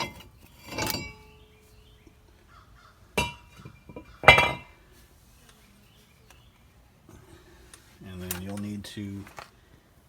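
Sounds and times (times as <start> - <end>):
metallic clanks of brake rotor: 0.0 - 1.4, 3.2 - 4.8.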